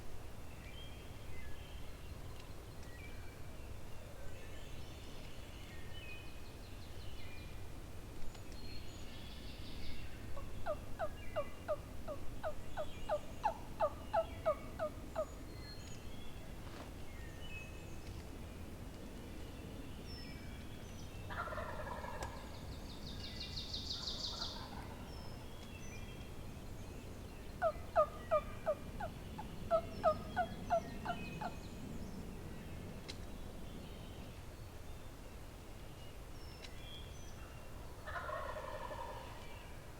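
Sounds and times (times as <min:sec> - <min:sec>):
wild turkey yelping: 0:27.6 - 0:29.1, 0:38.1 - 0:39.3.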